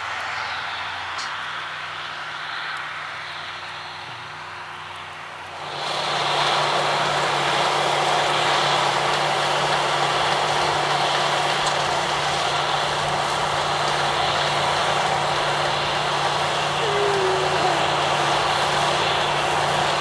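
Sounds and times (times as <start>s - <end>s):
diesel engine hum: 0.0s - 20.0s
rushing mechanical noise: 0.0s - 20.0s.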